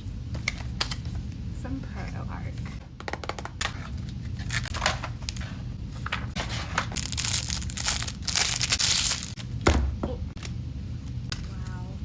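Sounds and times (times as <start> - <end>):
packaging rustling and tearing: 3.9 - 9.4.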